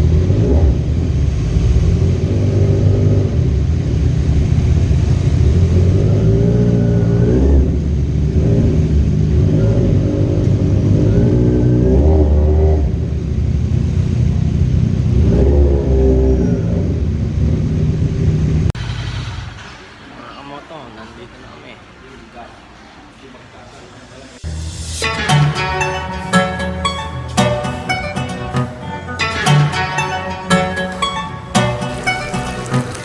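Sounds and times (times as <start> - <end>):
motorcycle engine revving: 0.0 - 18.9.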